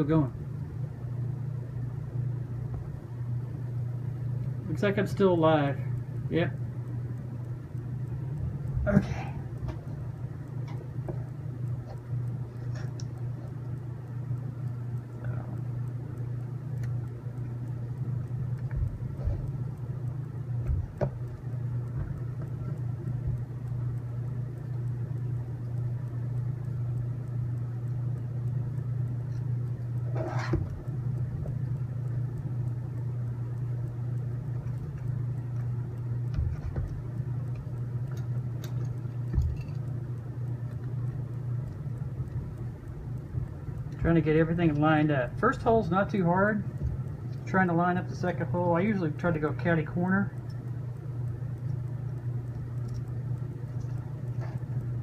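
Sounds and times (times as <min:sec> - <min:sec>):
low mechanical hum: 0:00.0 - 0:55.0
small parts clicking and tapping: 0:33.6 - 0:45.0.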